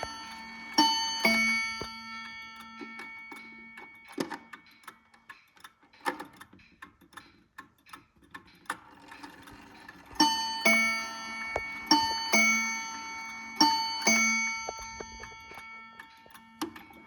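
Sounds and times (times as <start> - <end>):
clock two-note chime strike: 0.0 - 4.5, 10.2 - 17.0
clock ticking: 0.0 - 17.0.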